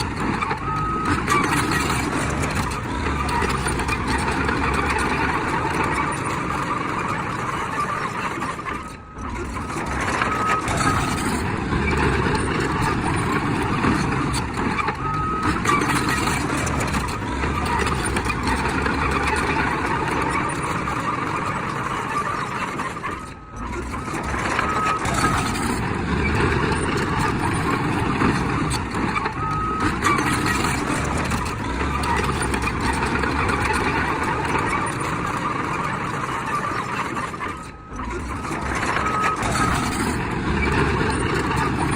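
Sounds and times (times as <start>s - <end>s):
bulldozer engine running: 0.0s - 41.9s
reversing alarm beeps: 0.4s - 2.6s, 29.3s - 32.6s, 37.5s - 41.9s.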